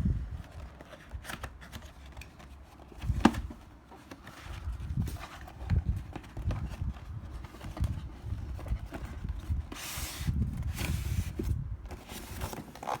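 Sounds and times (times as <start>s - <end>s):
rustling scrape: 2.6s - 13.0s
cardboard box knocks and bumps: 3.0s - 13.0s.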